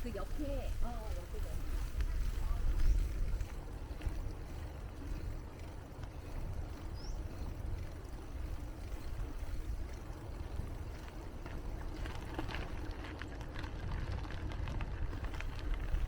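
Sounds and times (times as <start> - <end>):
bicycle tyres rolling on path: 0.0 - 16.0
wind buffeting microphone: 0.0 - 16.0.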